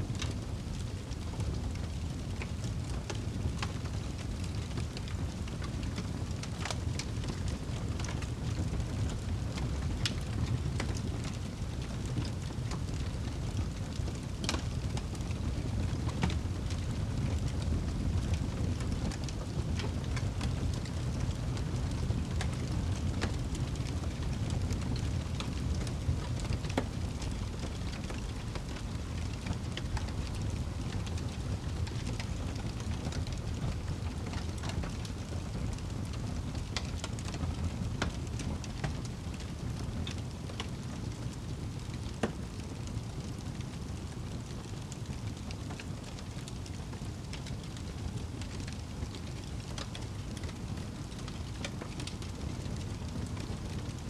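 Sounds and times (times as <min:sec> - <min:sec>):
fire crackling and popping: 0:00.0 - 0:54.0.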